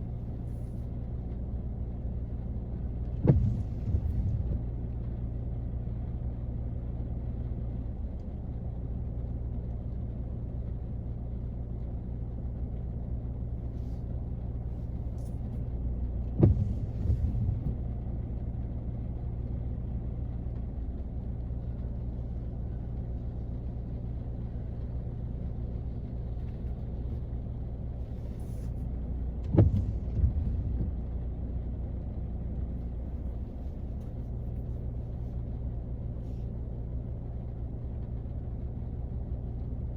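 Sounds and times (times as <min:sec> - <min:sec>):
muffled rain on a car: 0:00.0 - 0:39.9
sudden thuds: 0:16.4 - 0:17.8, 0:29.4 - 0:31.1.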